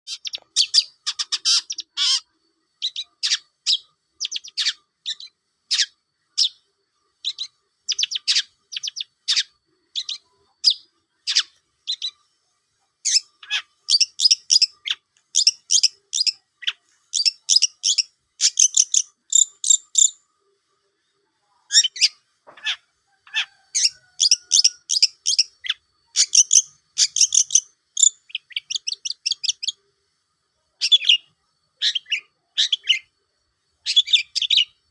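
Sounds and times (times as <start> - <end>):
bird singing sharp chattering notes: 13.0 - 20.2, 21.7 - 29.8.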